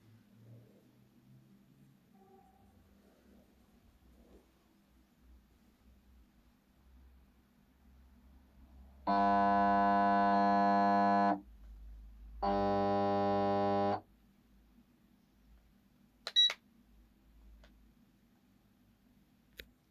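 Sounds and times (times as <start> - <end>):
electronic buzzer tones: 9.1 - 11.4, 12.4 - 14.0.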